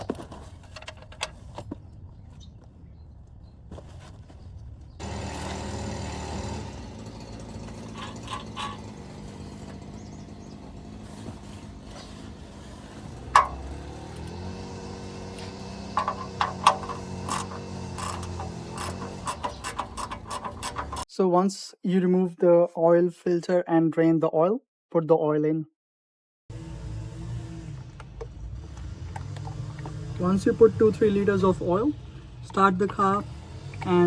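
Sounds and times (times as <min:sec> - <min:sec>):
metal clicks and knocks: 0:13.2 - 0:13.9, 0:15.9 - 0:21.0.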